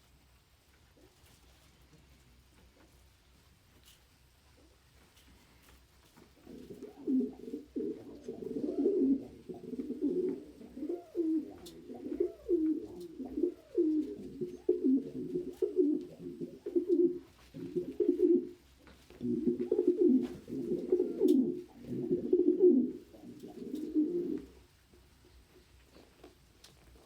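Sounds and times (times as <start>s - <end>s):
pigeon cooing: 6.4s - 24.7s.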